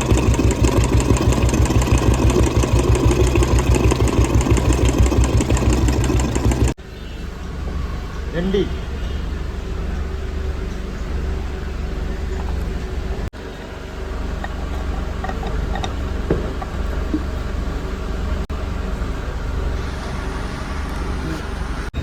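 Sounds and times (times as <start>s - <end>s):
motorcycle engine running: 0.0s - 6.8s
road and traffic noise: 0.0s - 22.0s.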